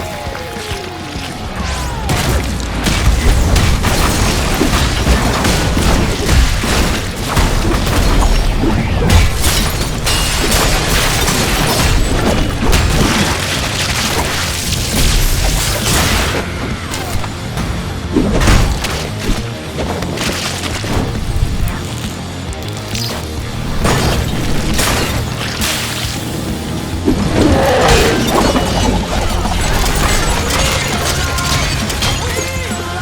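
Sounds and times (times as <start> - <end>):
rapid impacts: 0.0 - 22.0
music: 0.0 - 33.0
fight sound effects booms and crashes: 1.6 - 19.5.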